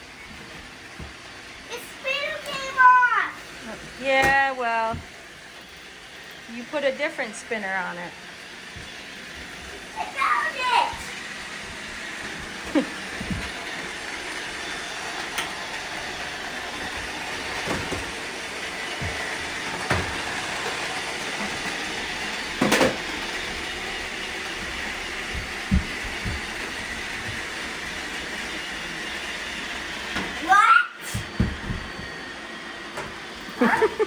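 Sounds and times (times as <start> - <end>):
robot vacuum whirring: 0.0 - 34.0
vacuum bumping into things: 24.6 - 27.6.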